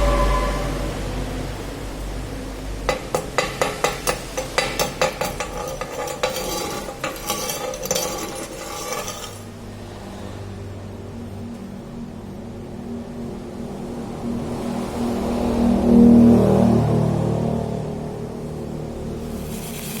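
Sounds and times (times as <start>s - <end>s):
clinking and crackling clatter: 2.9s - 9.5s.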